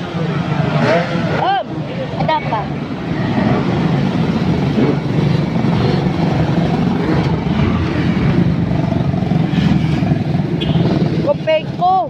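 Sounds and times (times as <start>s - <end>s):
road noise: 0.0s - 12.0s
vehicle engine rumble: 0.0s - 12.0s.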